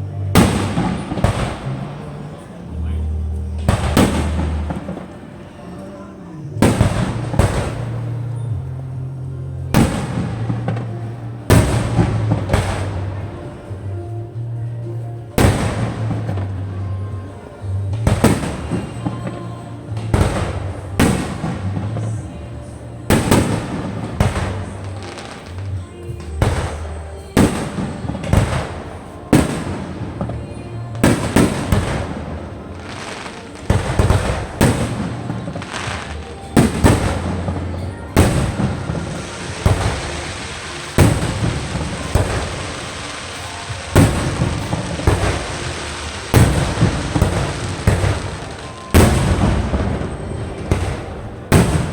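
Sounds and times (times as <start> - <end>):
firework bangs: 0.0 - 51.9.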